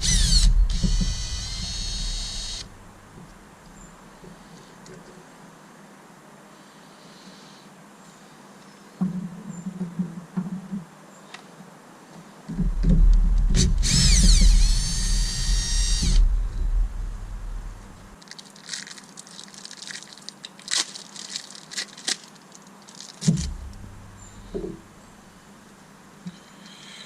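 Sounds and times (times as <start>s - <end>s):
power drill whine: 0.0s - 2.7s, 13.6s - 16.9s
low rumble: 0.0s - 3.8s, 12.6s - 18.2s, 23.3s - 25.4s.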